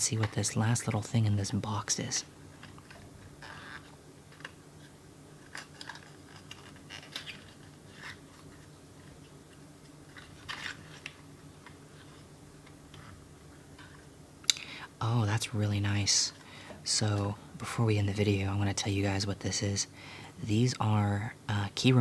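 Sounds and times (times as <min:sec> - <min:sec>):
package crinkling and rustling: 0:02.5 - 0:14.1.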